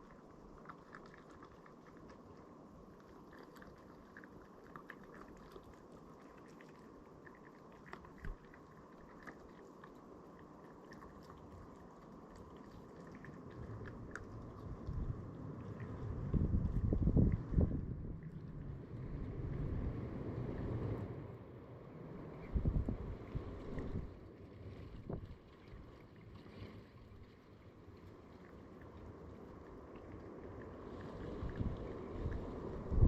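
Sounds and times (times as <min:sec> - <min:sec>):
faint small clicks and crackles: 0:00.0 - 0:17.5
wind buffeting microphone: 0:14.6 - 0:21.2, 0:22.4 - 0:24.2, 0:24.9 - 0:25.4, 0:31.1 - 0:33.0.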